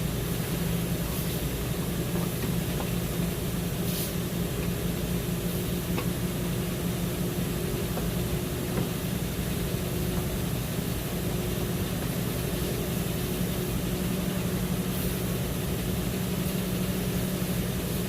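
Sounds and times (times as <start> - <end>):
low mechanical hum: 0.0 - 18.0.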